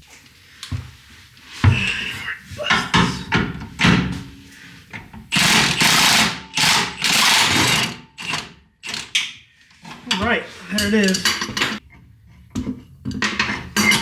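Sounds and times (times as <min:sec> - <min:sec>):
noisy tool bursts: 0:05.3 - 0:08.3
metal tool knocks and clanks: 0:10.1 - 0:11.8.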